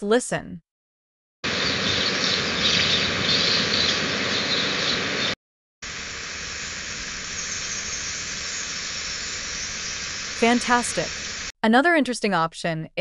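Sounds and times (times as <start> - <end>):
noisy hiss: 1.5 - 11.5.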